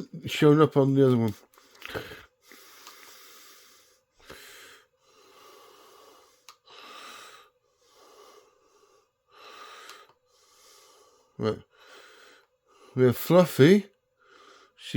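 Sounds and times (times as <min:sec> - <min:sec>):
person breathing: 0:01.6 - 0:13.0, 0:14.2 - 0:14.8
faint clicks: 0:02.8 - 0:03.1, 0:06.4 - 0:06.6, 0:09.8 - 0:10.2.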